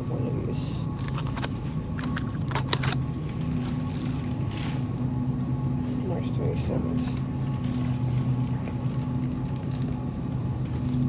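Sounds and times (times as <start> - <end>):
low hum of a supermarket: 0.0 - 11.0.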